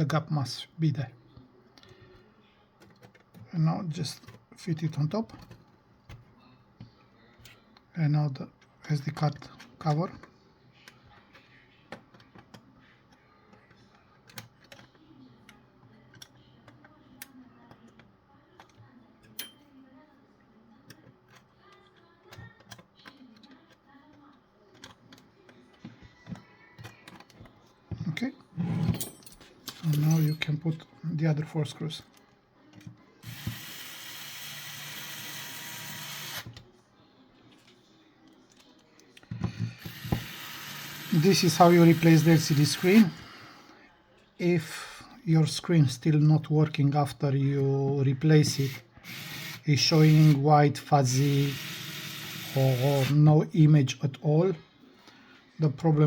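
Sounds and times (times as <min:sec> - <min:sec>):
electric screwdriver running: 0:33.2 - 0:36.5, 0:39.7 - 0:43.2, 0:48.5 - 0:50.4, 0:51.1 - 0:53.2.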